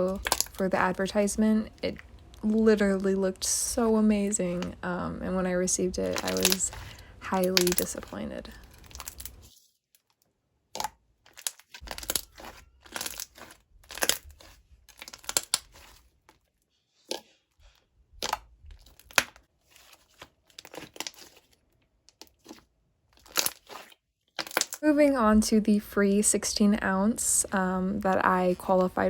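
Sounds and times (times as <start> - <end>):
slime squelching and popping: 0.0 - 3.1, 5.8 - 9.5, 10.7 - 16.4, 18.1 - 24.8.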